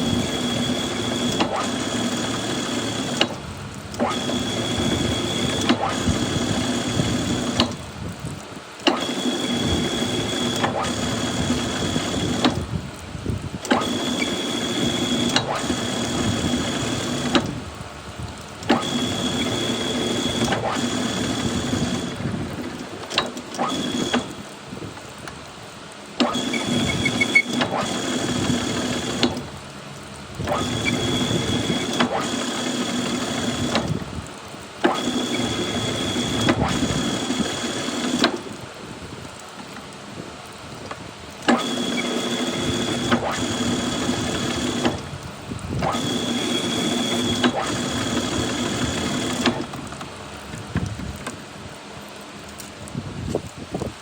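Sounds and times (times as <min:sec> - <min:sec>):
metal lathe whining: 0:00.0 - 0:07.8, 0:08.8 - 0:12.6, 0:13.6 - 0:17.6, 0:18.6 - 0:24.4, 0:26.2 - 0:29.5, 0:30.4 - 0:33.9, 0:34.8 - 0:38.6, 0:41.4 - 0:45.2, 0:45.8 - 0:50.2.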